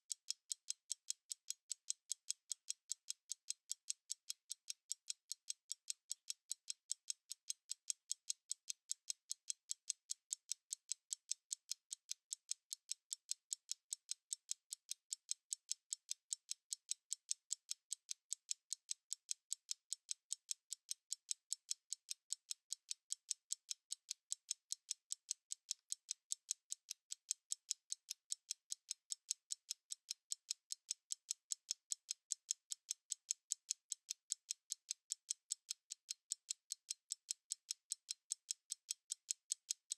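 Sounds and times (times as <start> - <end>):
stopwatch ticking: 0.0 - 39.9.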